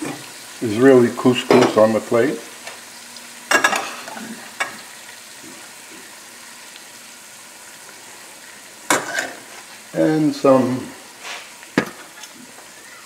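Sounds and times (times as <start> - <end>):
steady hiss: 0.0 - 13.0
utensil scraping dishware: 8.9 - 9.4.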